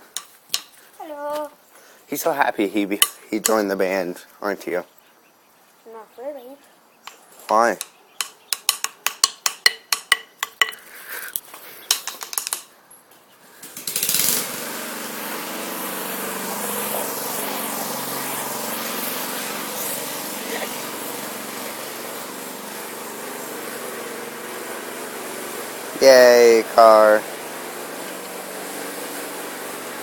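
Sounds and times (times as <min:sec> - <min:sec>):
engine running: 0:13.6 - 0:30.0.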